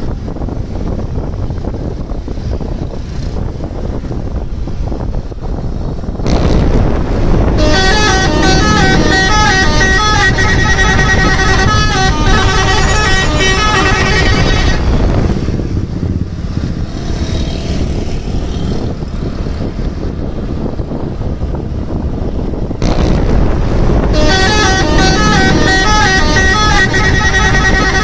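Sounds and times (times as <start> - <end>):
low vehicle rumble: 0.0 - 28.0
rushing noise: 6.0 - 18.8, 22.7 - 28.0
bus multi-tone horn melody: 7.5 - 15.3, 24.0 - 28.0.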